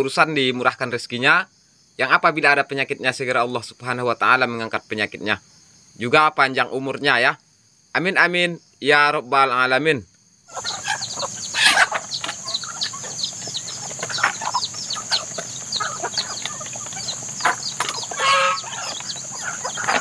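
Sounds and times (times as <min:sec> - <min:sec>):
steady high-pitched hiss: 0:00.0 - 0:20.0
chickens clucking and peeping: 0:10.5 - 0:20.0.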